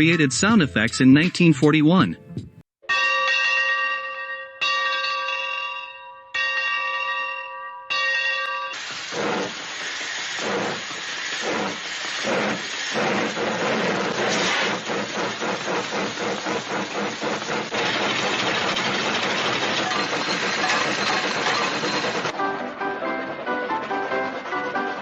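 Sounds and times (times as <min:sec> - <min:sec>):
steam locomotive chugging: 0:08.8 - 0:25.0.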